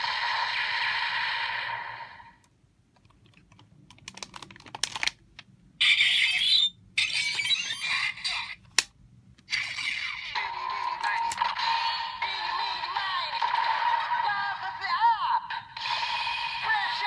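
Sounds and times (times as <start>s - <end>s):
hissy electronic toy effect: 15.6s - 17.0s.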